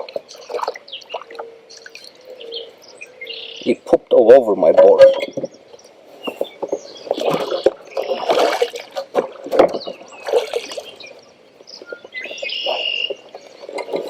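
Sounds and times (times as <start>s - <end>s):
water splashing at a kayak: 0.0s - 4.0s, 4.8s - 14.0s.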